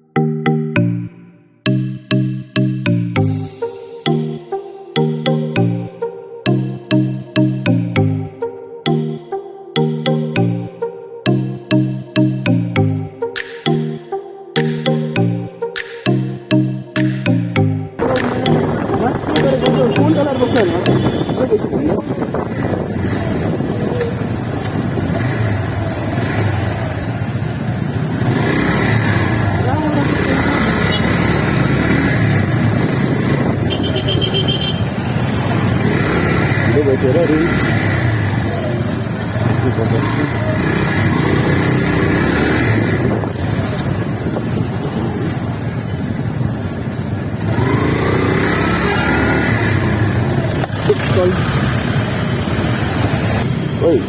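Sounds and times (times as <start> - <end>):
road noise: 14.6 - 54.0
motorcycle engine rumble: 17.6 - 54.0
wind on microphone: 18.0 - 26.0, 32.2 - 34.4, 42.6 - 47.7.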